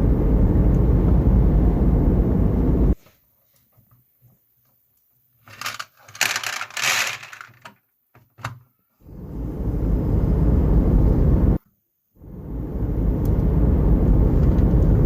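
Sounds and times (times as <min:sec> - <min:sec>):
marbles rolling rumble: 0:05.5 - 0:07.6
marbles clicking on wooden blocks: 0:05.6 - 0:07.7.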